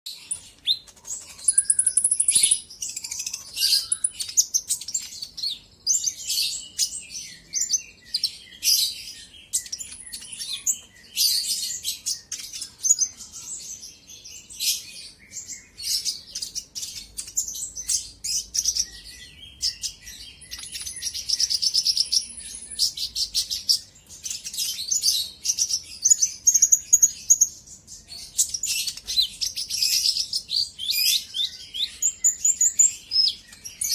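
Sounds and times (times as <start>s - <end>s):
sunbird chirping and trilling: 0.1s - 33.9s.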